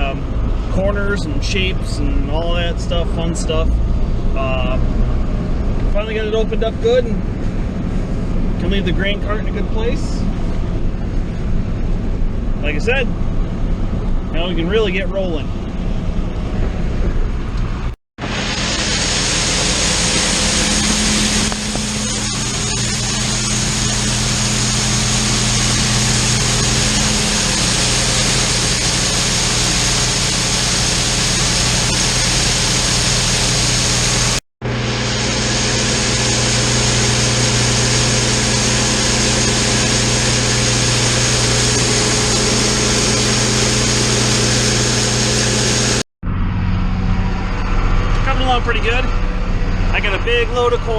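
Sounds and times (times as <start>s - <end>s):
vehicle engine running under load: 0.0s - 50.9s.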